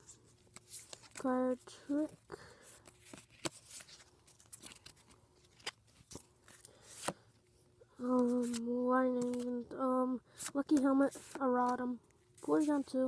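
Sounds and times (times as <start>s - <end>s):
cards rustling: 0.0s - 13.0s.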